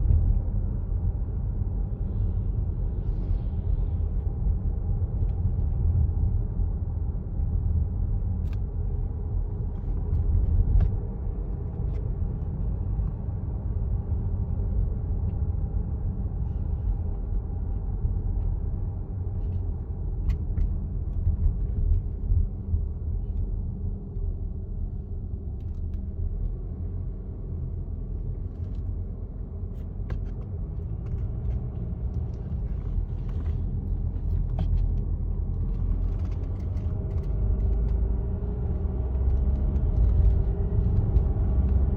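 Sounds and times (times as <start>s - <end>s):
car engine running: 28.0s - 41.9s.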